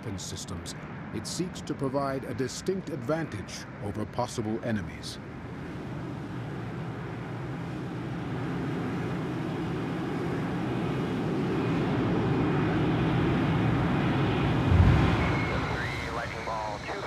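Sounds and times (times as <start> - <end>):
jet engine rumble: 0.0 - 17.0
low thump: 14.7 - 15.6.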